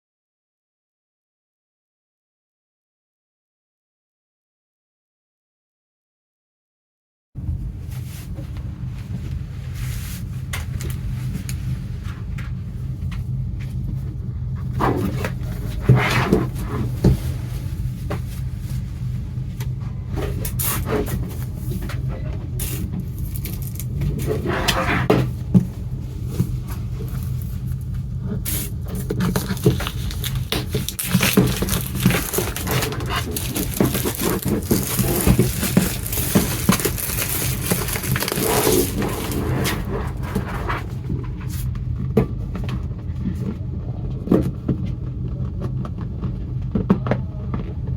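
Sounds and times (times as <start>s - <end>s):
steady low hum: 7.4s - 47.9s
packaging scraping and rustling: 22.6s - 41.7s.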